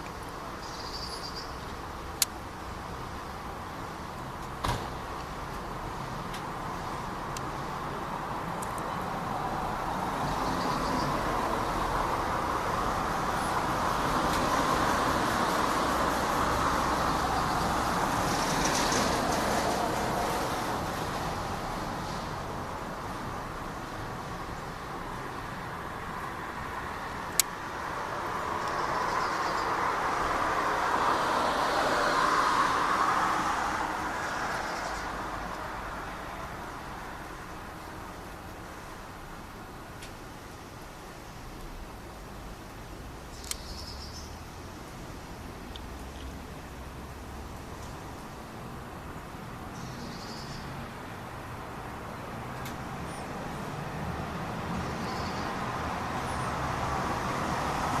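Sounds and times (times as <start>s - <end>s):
passing vehicle rushing: 26.4s - 37.3s.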